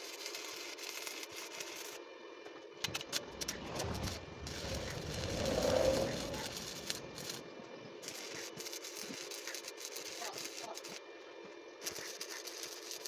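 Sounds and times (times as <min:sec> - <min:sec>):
welding arc crackling and hissing: 0:00.0 - 0:02.0, 0:02.8 - 0:11.1, 0:11.8 - 0:13.0
rumbling noise: 0:02.9 - 0:08.0.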